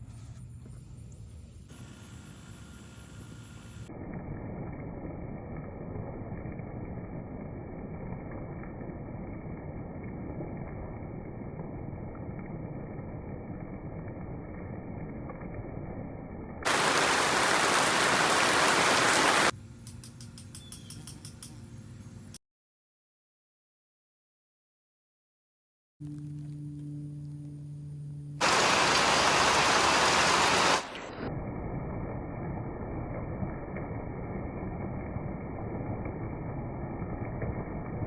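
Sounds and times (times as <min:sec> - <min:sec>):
rain falling: 0:16.6 - 0:19.5, 0:28.4 - 0:31.3.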